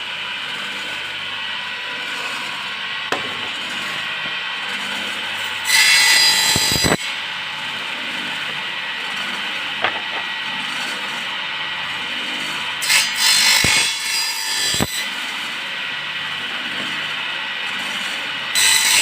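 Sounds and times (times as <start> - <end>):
power saw cutting wood: 0.0 - 19.0
knocks on wood: 3.1 - 3.6, 9.8 - 10.3.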